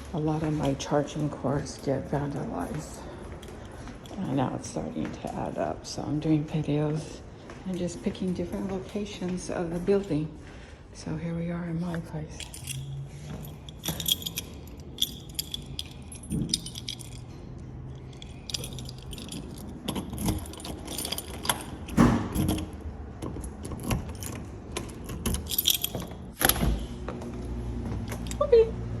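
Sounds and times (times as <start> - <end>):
keys jangling: 0.6 - 5.6, 11.8 - 27.0, 28.0 - 28.7
handling knocks and thumps: 18.5 - 26.9.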